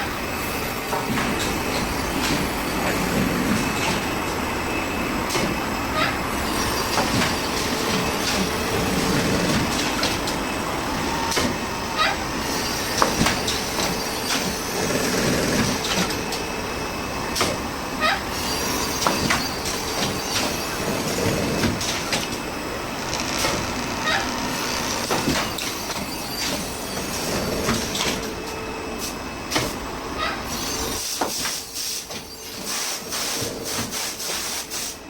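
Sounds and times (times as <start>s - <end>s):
sewing machine clattering: 6.6s - 10.4s, 12.8s - 16.4s, 18.7s - 28.4s
sharp machine clicks: 21.9s - 26.6s.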